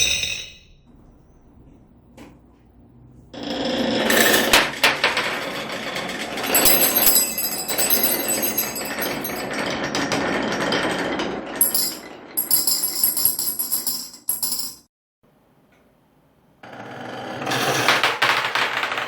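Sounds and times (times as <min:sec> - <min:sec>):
marbles rolling down wooden track: 0:03.4 - 0:14.7, 0:17.4 - 0:19.0
marbles clinking into glass bottle: 0:06.5 - 0:09.6, 0:11.6 - 0:14.8.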